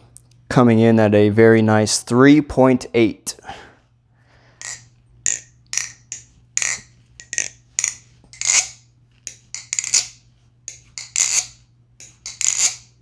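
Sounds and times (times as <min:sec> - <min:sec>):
butterfly knife metallic clacks: 0:04.6 - 0:13.0.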